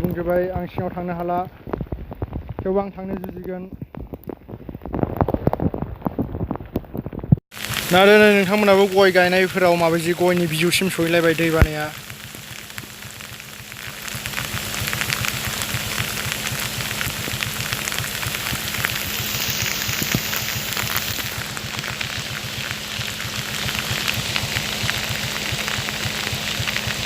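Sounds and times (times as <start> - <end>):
rain patter: 0.0 - 27.0
steady low hum: 7.7 - 27.0.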